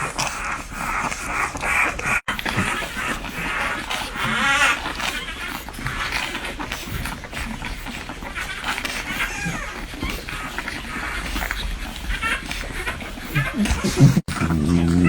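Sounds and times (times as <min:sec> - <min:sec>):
puppies suckling: 0:00.0 - 0:15.0
puppy small squeaks: 0:02.6 - 0:14.5.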